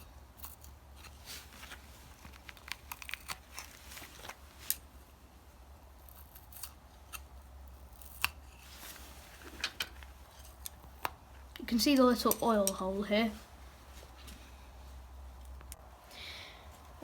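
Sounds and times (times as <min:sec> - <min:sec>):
tape peeling off with crackles: 0:00.4 - 0:04.8.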